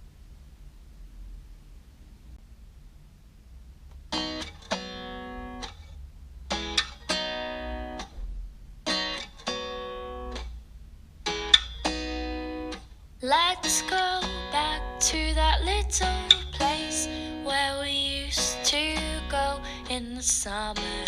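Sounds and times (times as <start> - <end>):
acoustic guitar strumming chords: 4.1 - 5.7, 6.5 - 8.2, 8.9 - 10.5, 11.2 - 21.0.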